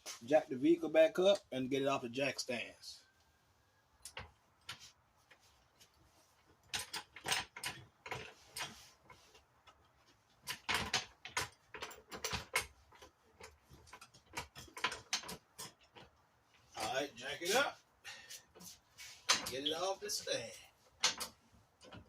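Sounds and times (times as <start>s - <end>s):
floor jack clicking and knocking: 6.5s - 16.2s, 20.9s - 22.0s.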